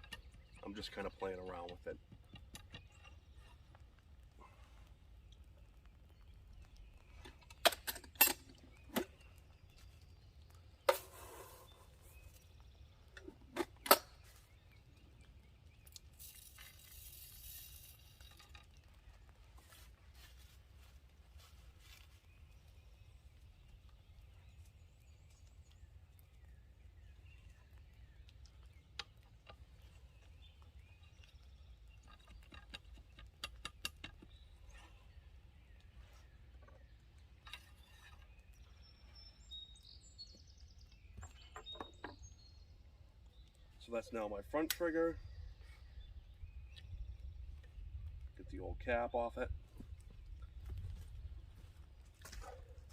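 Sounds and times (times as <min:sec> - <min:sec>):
gun handling clicks and clinks: 0:07.2 - 0:09.1.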